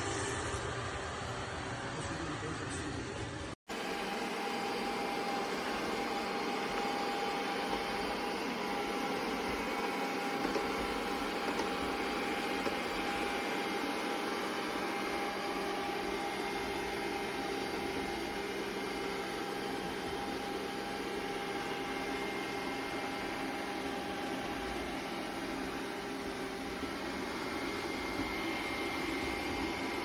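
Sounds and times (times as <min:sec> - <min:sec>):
robot vacuum whirring: 0:03.7 - 0:30.0.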